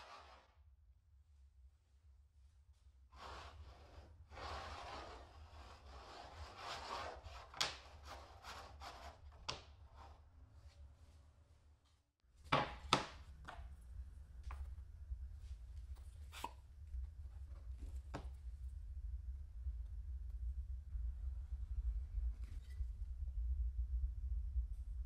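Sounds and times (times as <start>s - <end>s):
wood rubbed and scraped by hand: 0.0s - 0.5s, 3.2s - 10.2s.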